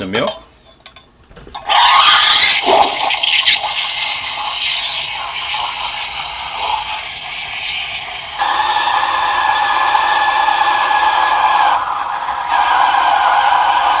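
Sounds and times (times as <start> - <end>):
steam wand hissing into milk: 1.8 - 8.8.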